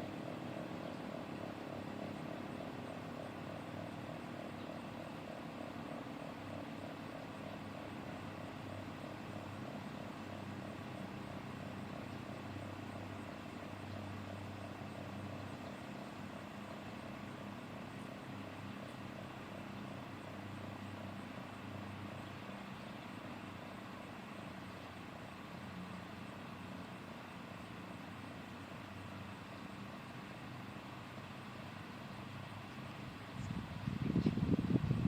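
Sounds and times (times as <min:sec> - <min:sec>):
faint warning siren wavering: 0:00.0 - 0:22.6.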